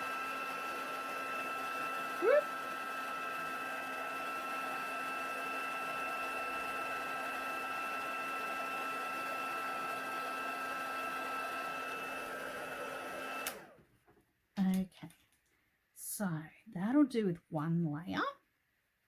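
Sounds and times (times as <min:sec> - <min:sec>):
heat tool fan whining: 0:00.0 - 0:13.8.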